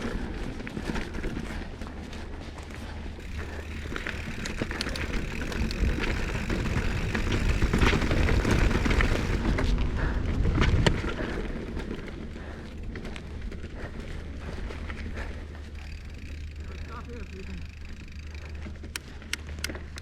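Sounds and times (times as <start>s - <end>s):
bike knocking and rattling: 0.0s - 20.0s
bike tyres rolling over dirt: 0.0s - 20.0s
wind buffeting microphone: 3.2s - 16.5s.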